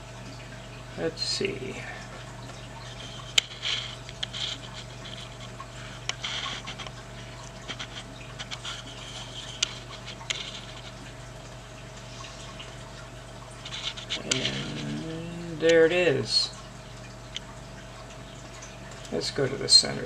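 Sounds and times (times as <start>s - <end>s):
steady electrical hum: 0.0s - 20.0s
scratchy rustles: 3.0s - 7.0s, 7.6s - 11.0s, 13.6s - 14.9s.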